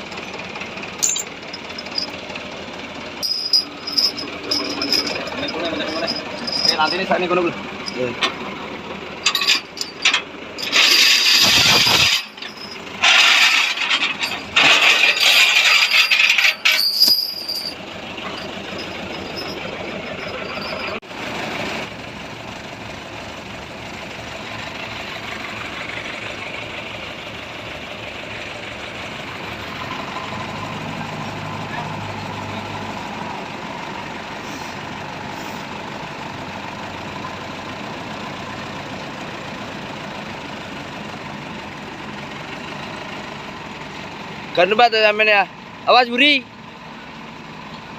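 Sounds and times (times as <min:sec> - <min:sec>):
engine running steadily: 0:00.0 - 0:47.9
rattling hissing bursts: 0:10.0 - 0:16.2.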